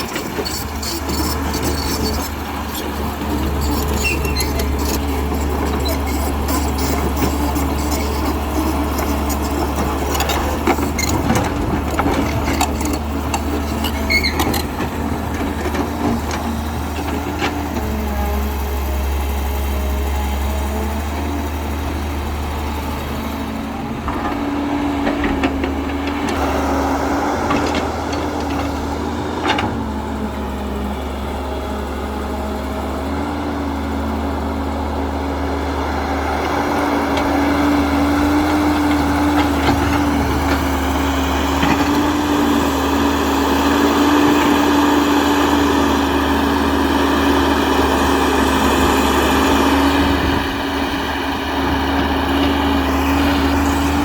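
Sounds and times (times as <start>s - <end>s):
toy excavator motor whine: 0.0s - 14.8s.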